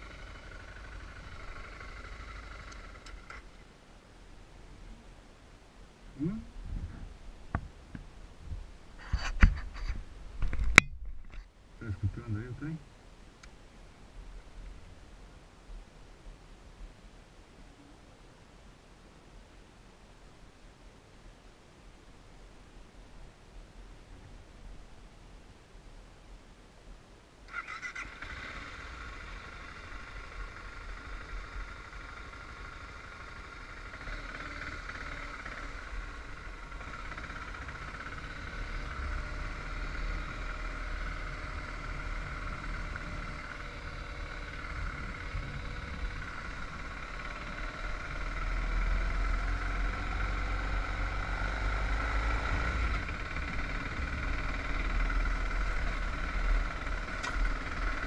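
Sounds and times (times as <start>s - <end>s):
motorcycle engine running: 0.0s - 3.6s, 27.5s - 58.0s
rumble of wind and road: 0.0s - 58.0s.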